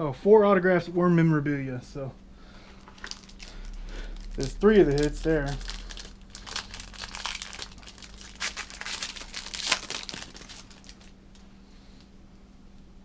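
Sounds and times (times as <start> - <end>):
card pack wrapper crinkling: 2.8 - 11.5.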